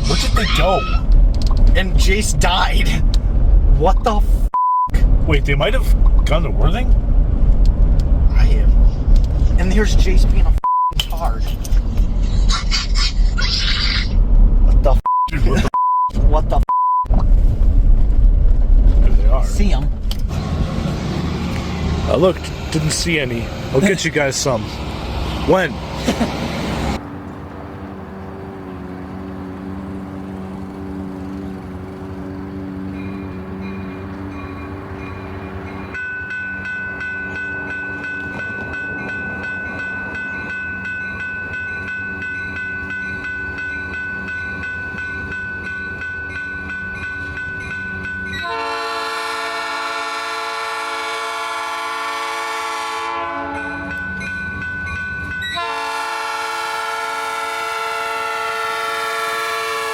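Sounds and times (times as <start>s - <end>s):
diesel locomotives running: 0.0s - 14.7s, 17.3s - 59.9s
locomotive air horn blast: 26.8s - 35.6s, 48.4s - 53.9s, 55.6s - 59.9s.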